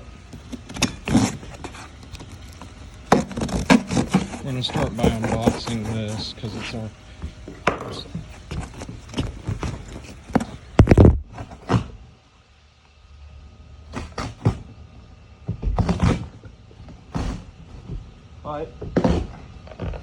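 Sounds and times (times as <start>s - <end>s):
box being handled and opened: 0.3s - 6.8s, 7.5s - 11.2s.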